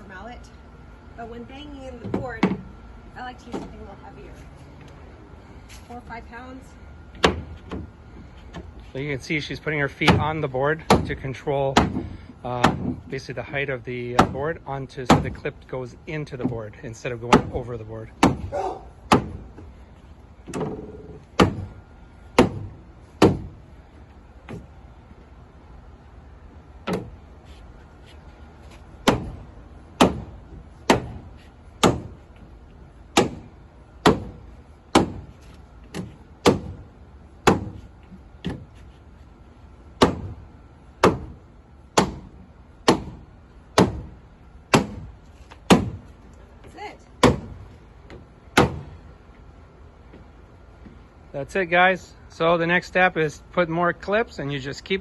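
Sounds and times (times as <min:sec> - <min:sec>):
rubber mallet striking deck board: 0:37.4 - 0:37.8.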